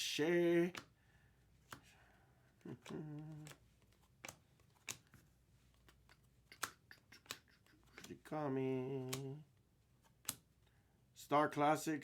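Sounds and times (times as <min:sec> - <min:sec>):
faint card clicks: 0:01.6 - 0:01.9, 0:02.6 - 0:09.4, 0:10.0 - 0:10.7.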